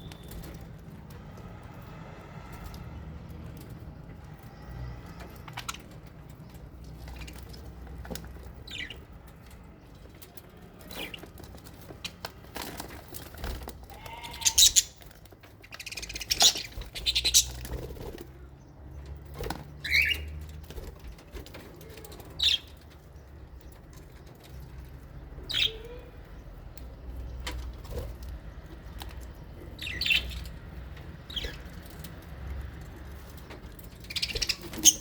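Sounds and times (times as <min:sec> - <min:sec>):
parrots chirping: 0:08.6 - 0:09.2, 0:14.0 - 0:17.7, 0:29.8 - 0:31.8, 0:34.0 - 0:35.0.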